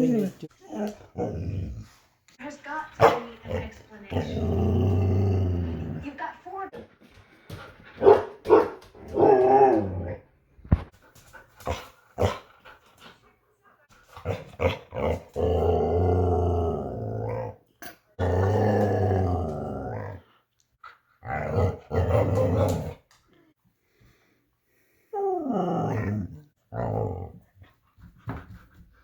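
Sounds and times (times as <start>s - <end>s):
dog howling vocalizations: 25.2s - 27.3s.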